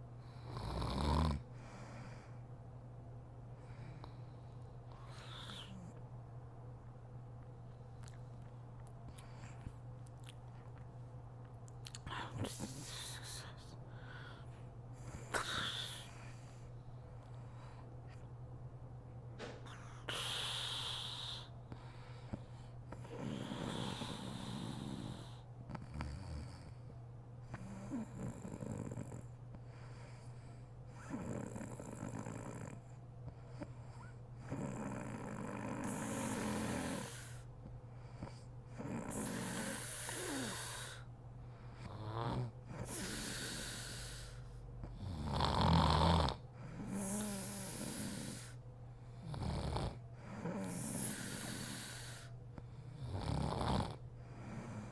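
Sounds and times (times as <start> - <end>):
woman snoring: 0.4 - 1.4, 5.0 - 5.8, 15.1 - 16.2, 19.7 - 21.5, 23.0 - 26.7, 27.6 - 29.2, 31.0 - 32.8, 34.0 - 37.4, 38.7 - 41.1, 41.8 - 48.6, 49.2 - 52.3, 53.0 - 54.9.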